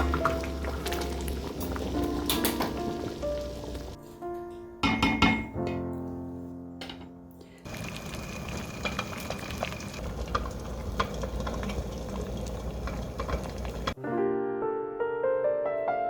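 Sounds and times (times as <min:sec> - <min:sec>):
syrup bubbling in a pot: 0:00.0 - 0:04.0, 0:07.6 - 0:14.0
piano music: 0:00.0 - 0:08.0, 0:13.2 - 0:16.0.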